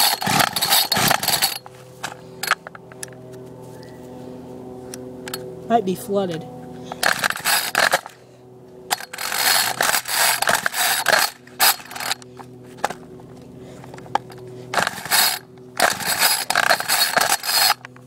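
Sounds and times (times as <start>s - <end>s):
recoil starter rope whirring: 0.0s - 3.2s, 6.8s - 18.0s.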